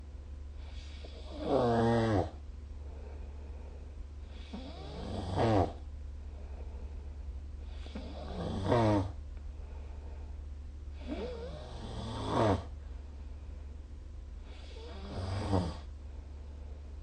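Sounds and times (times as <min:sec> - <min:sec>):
steady low hum: 0:00.0 - 0:17.0
person snoring: 0:00.8 - 0:02.4, 0:04.3 - 0:05.8, 0:07.6 - 0:09.2, 0:11.0 - 0:12.7, 0:14.5 - 0:15.9.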